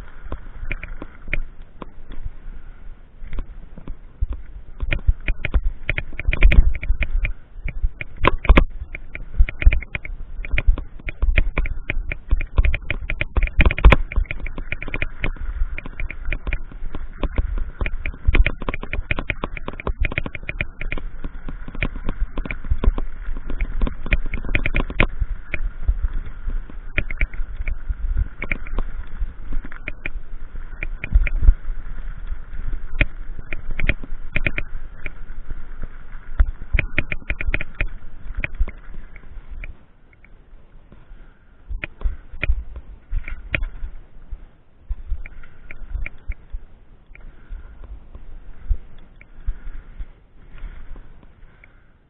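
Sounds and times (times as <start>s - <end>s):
footsteps crunching on ballast: 3.2s - 51.9s
sharp clicks: 3.3s - 41.0s.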